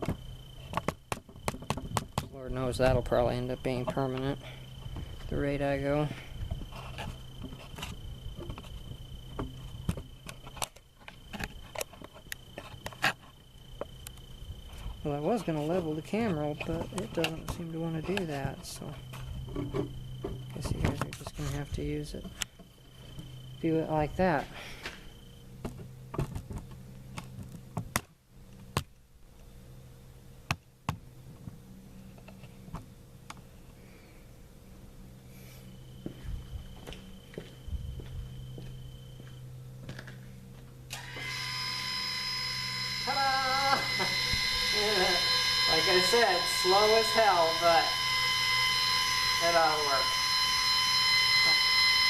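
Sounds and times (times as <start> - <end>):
sharp clicks and knocks: 0.0 - 2.4
crickets droning: 0.0 - 52.0
steady low hum: 0.0 - 52.0.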